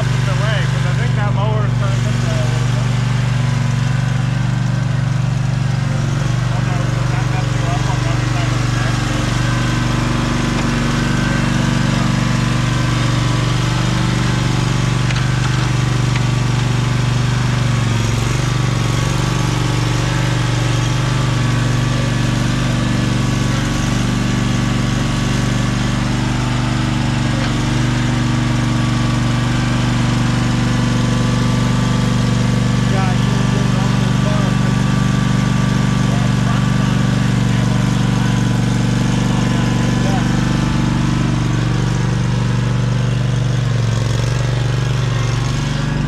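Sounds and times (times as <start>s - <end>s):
lawn mower engine running: 0.0s - 46.0s.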